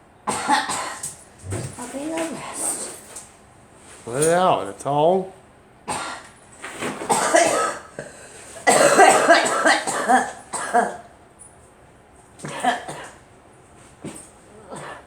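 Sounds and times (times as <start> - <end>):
girl coughing: 0.3 - 1.1, 5.9 - 6.3, 7.0 - 11.1, 12.4 - 13.2, 14.6 - 15.0.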